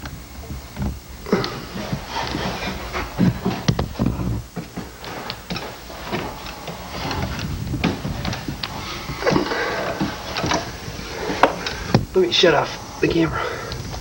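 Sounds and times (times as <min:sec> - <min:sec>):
wooden ladder knocks and creaks: 0:00.0 - 0:12.2.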